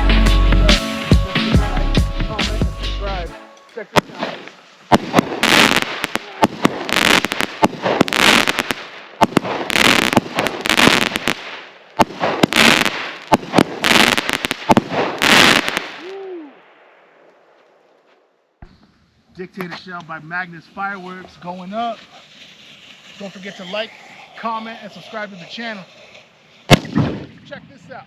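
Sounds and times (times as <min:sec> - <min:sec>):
firework reports: 0:00.0 - 0:16.7, 0:19.3 - 0:28.0
firework crackling hiss: 0:03.8 - 0:16.6, 0:19.8 - 0:28.0.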